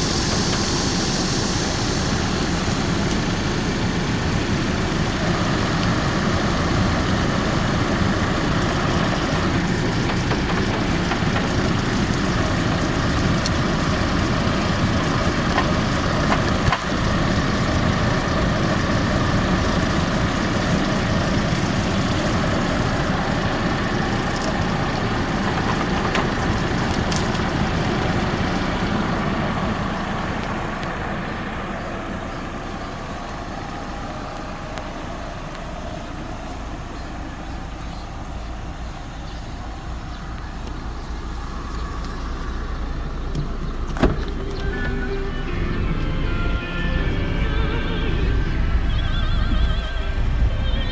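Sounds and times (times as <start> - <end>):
car engine idling: 0.0 - 50.9.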